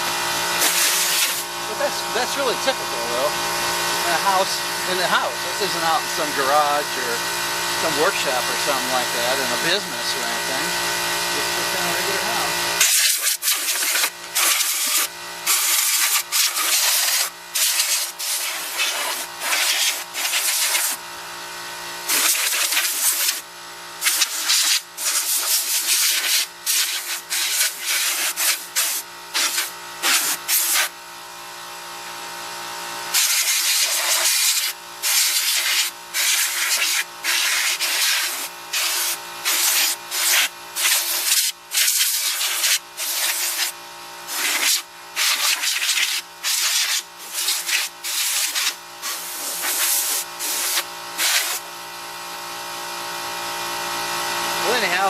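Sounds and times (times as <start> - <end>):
compressed air hissing: 0.6 - 3.2, 12.8 - 21.0, 22.1 - 23.4, 24.0 - 30.9, 33.1 - 51.7.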